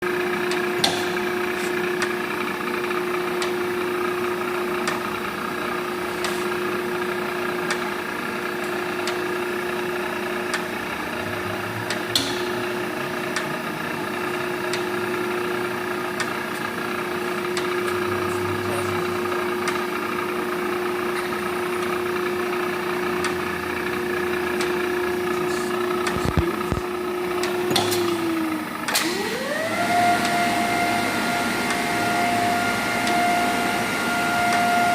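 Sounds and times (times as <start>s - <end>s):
grinder motor hum: 0.0s - 34.9s
rising whine: 10.9s - 34.9s.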